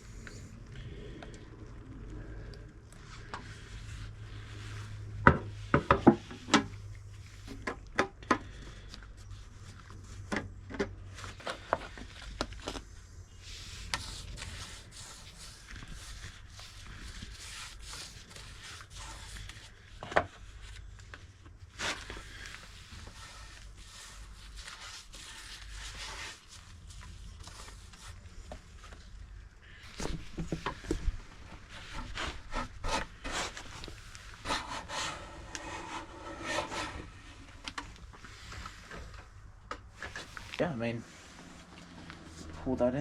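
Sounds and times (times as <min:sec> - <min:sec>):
low steady hum: 0:00.0 - 0:43.0.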